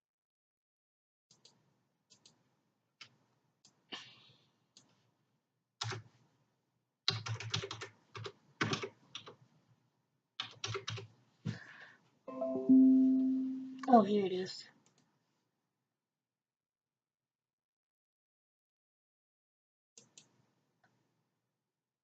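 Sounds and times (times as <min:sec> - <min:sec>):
typing on laptop keyboard: 0:05.8 - 0:06.1, 0:07.1 - 0:09.4, 0:10.4 - 0:11.1.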